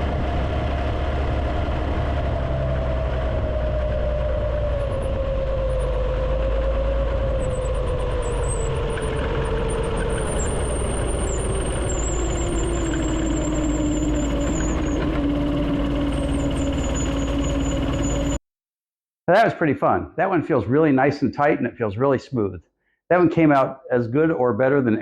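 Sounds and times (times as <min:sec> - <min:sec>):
small go-kart engine running: 0:00.0 - 0:18.4.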